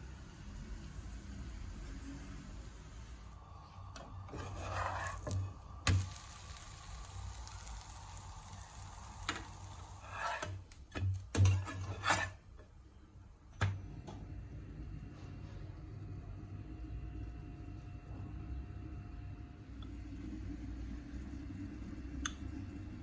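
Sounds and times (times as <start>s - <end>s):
faint steady hiss: 0.0s - 13.5s
utensils scraping: 4.3s - 7.9s, 9.3s - 12.4s.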